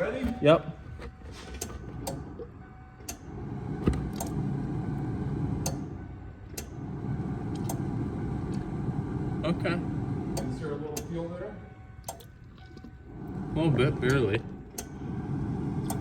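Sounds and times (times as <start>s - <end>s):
electric fuel pump humming: 0.0s - 16.0s.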